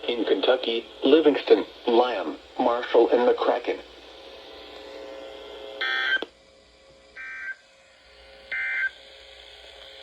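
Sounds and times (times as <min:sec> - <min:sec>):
faint radio static: 0:00.0 - 0:06.3
data tone bursts: 0:08.5 - 0:09.0.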